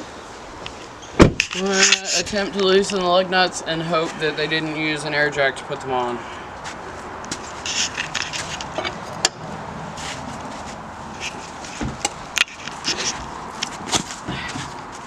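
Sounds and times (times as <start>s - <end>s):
lug wrench clinks and scrapes: 7.3s - 9.4s, 11.2s - 13.8s.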